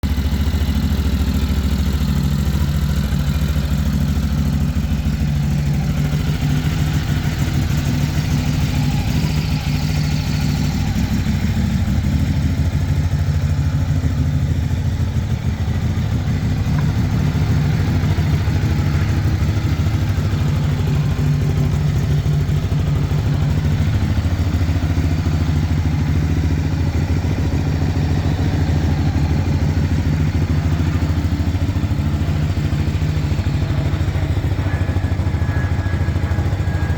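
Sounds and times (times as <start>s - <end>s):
motorcycle engine idling: 0.0s - 36.9s.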